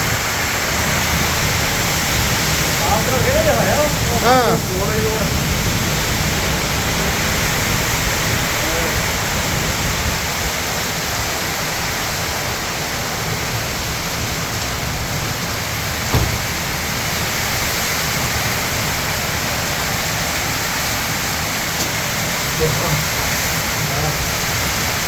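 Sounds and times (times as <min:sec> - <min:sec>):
heavy rain pouring: 0:00.0 - 0:25.0
short knock: 0:16.1 - 0:16.6.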